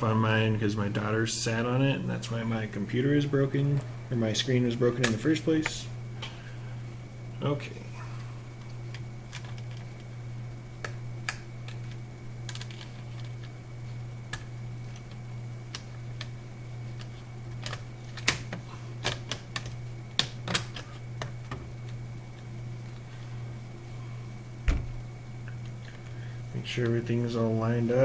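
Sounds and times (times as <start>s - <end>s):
steady low hum: 0.0s - 28.0s
plastic laptop parts clicking: 10.9s - 13.5s, 14.3s - 22.0s.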